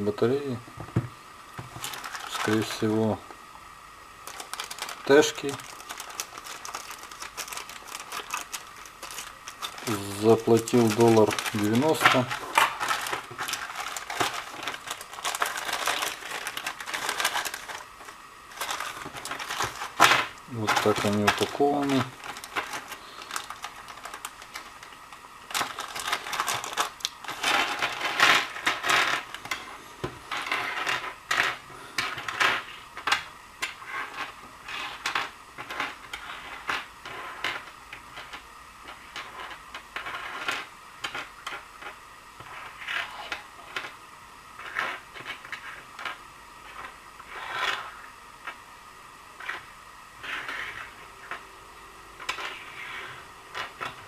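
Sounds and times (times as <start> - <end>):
packaging rustling: 1.6 - 3.1, 4.2 - 29.5
plastic pieces clicking: 4.3 - 24.9, 25.5 - 29.6.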